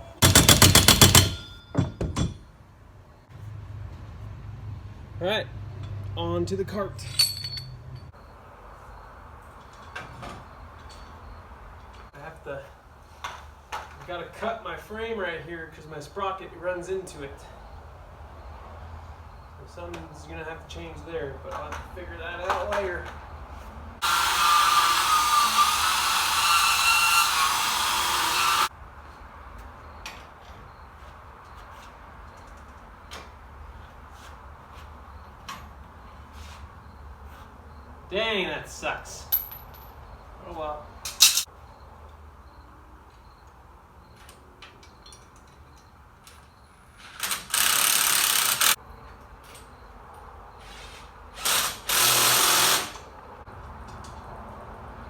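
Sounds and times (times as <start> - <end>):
power tool cutting steel: 24.0 - 28.7, 51.4 - 53.0
hand tools clicking on metal: 41.1 - 41.5.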